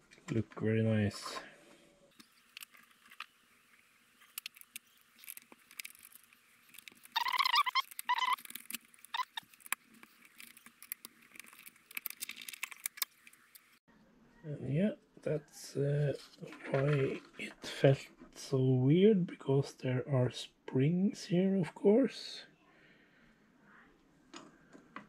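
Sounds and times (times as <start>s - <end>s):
plastic rubbing squeaks: 2.1s - 13.8s.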